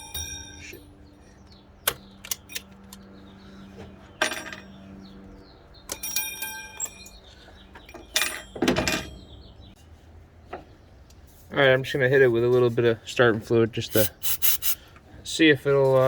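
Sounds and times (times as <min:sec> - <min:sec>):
ringing metallic clanks: 0:00.0 - 0:01.2, 0:05.9 - 0:09.5
metal tools clinking: 0:04.2 - 0:04.8, 0:05.9 - 0:09.3.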